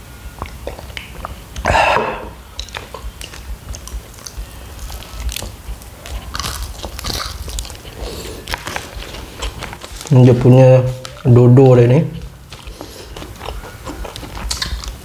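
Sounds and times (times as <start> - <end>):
chewing and biting pastry: 0.2 - 1.7, 2.4 - 15.0
wet clicks and crunches: 2.6 - 11.3, 12.1 - 15.0.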